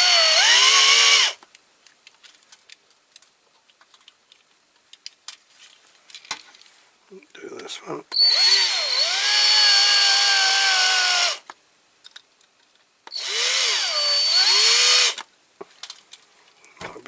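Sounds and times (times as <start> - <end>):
electric drill drilling metal: 0.0 - 1.4, 8.1 - 11.4, 13.1 - 15.2.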